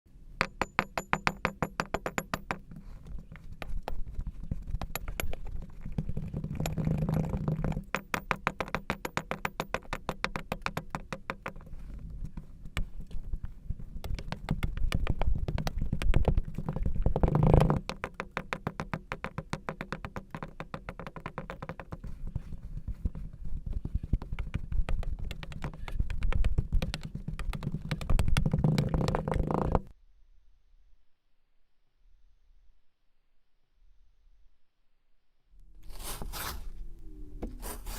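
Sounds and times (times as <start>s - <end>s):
sand squish: 35.7s - 37.9s.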